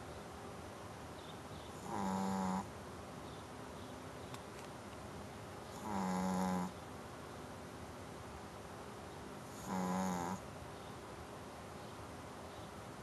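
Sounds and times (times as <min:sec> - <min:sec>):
pet snoring through nose: 0:01.8 - 0:02.7, 0:05.8 - 0:06.7, 0:09.5 - 0:10.4.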